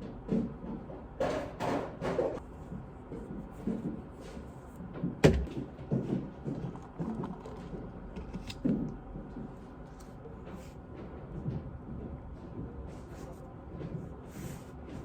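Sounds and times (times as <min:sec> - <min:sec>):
knocks and clunks of handling: 0:04.9 - 0:09.6.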